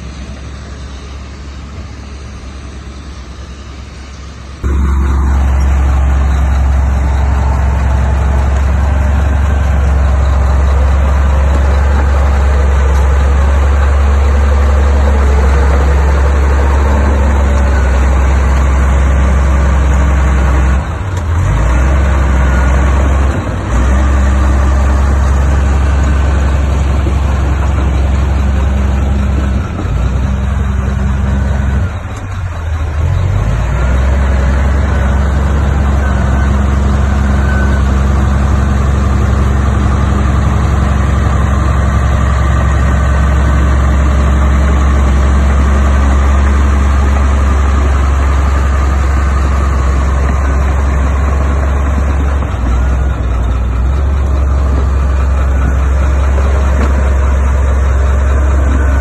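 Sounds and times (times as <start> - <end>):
heavy diesel engine droning: 0.0 - 59.0.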